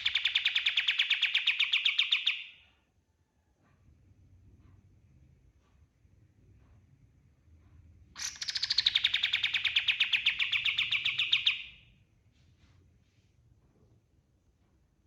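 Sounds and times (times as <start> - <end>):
bird rapid trill: 0.0 - 2.6, 8.2 - 11.8.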